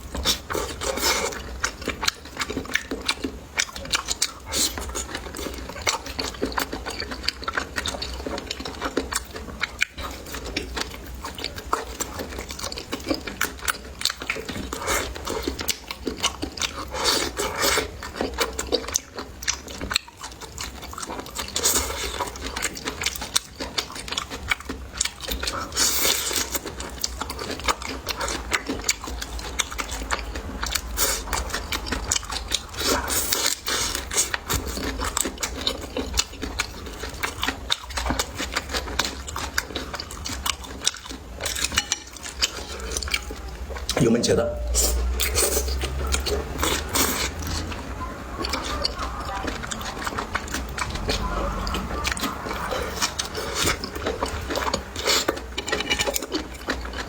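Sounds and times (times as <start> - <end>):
person chewing food: 0.0 - 57.0
low steady hum: 26.7 - 56.7.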